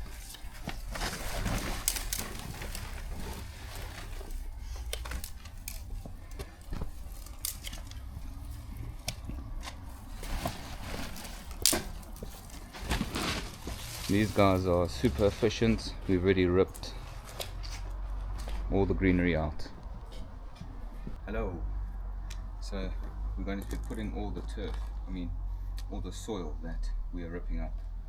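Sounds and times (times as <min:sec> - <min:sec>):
plants and soil being pulled out: 0:00.0 - 0:18.7
steady low rumble: 0:00.0 - 0:28.0.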